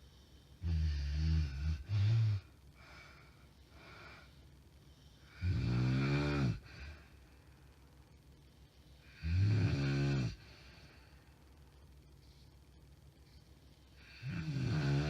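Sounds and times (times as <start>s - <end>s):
woman snoring: 0.6s - 2.6s, 5.2s - 7.1s, 9.0s - 10.8s, 14.0s - 15.0s.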